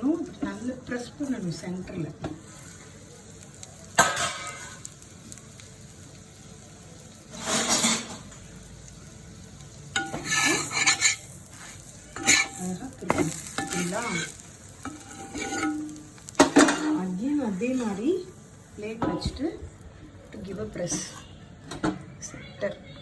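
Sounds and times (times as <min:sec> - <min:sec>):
food sizzling on a hot griddle: 0:00.0 - 0:22.4
spatula scraping: 0:10.0 - 0:18.0.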